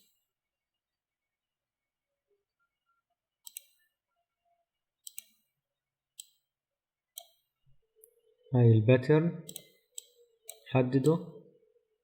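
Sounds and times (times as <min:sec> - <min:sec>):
computer mouse clicking: 0:03.4 - 0:03.8, 0:05.0 - 0:05.5, 0:06.2 - 0:06.5, 0:07.2 - 0:07.5, 0:09.4 - 0:11.2.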